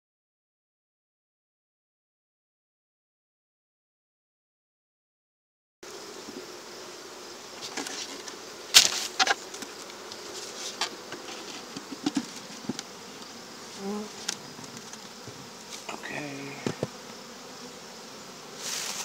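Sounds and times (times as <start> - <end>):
bees buzzing: 5.8 - 19.0.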